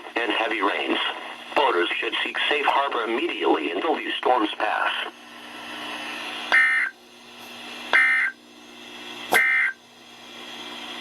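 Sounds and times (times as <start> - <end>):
faint radio hiss: 0.0 - 6.5.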